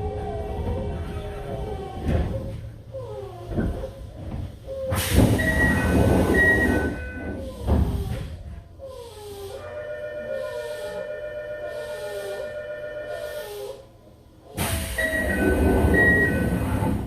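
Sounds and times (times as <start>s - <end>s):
electric train whine: 5.0s - 7.8s, 9.6s - 17.0s.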